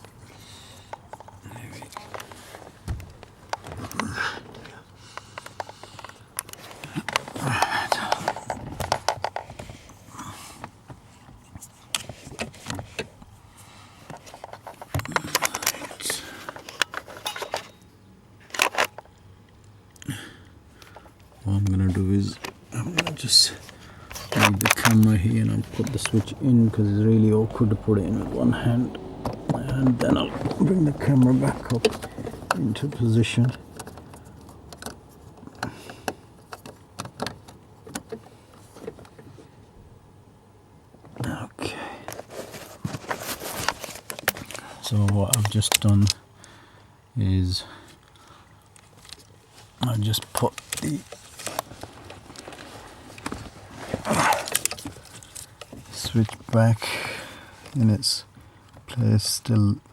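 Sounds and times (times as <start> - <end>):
hands handling objects clicking: 14.1 - 17.9, 18.5 - 20.0, 22.4 - 26.5.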